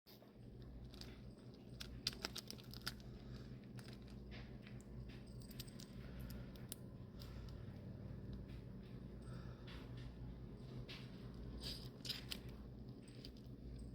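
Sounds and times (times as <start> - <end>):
steady low hum: 0.1 - 13.9
shells cracked and peeled by hand: 0.6 - 7.6.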